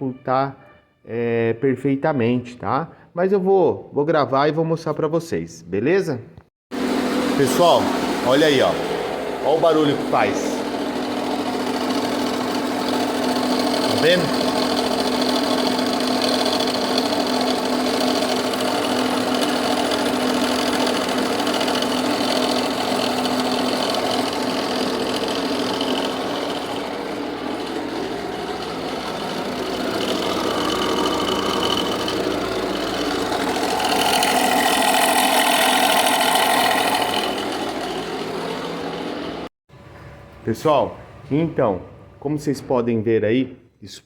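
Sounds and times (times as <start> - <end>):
diesel engine running: 6.8 - 39.5
rapid clacking from belt drive: 7.6 - 39.5.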